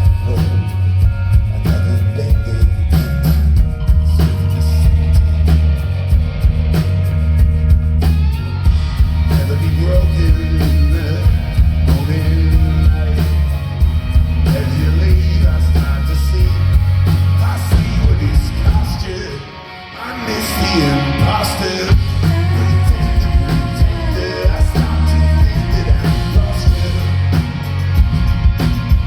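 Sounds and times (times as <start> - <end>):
person singing: 0.0 - 3.3, 9.2 - 13.7, 14.4 - 27.8
rock band playing: 0.0 - 29.0.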